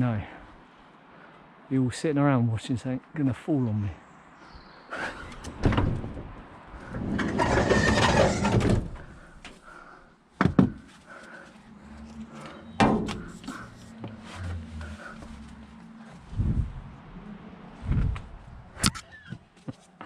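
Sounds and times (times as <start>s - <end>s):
van doors slamming shut: 5.4s - 6.4s, 12.8s - 13.7s
sliding door scraping on track: 6.8s - 9.2s.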